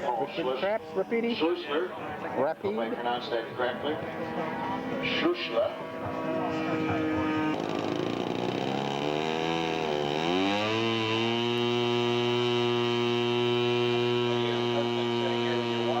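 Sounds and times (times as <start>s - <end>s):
model airplane engine running: 4.2s - 16.0s.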